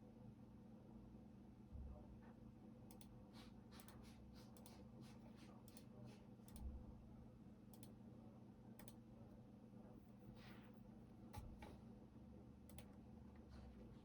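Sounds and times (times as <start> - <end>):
faint keyboard typing: 2.9 - 6.7, 8.8 - 9.0, 12.6 - 13.0.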